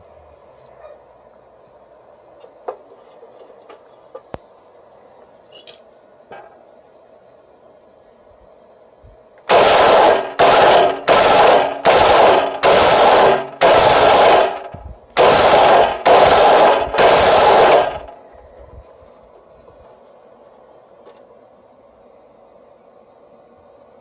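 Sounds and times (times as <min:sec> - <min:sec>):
chop saw grinding: 0:09.5 - 0:18.1.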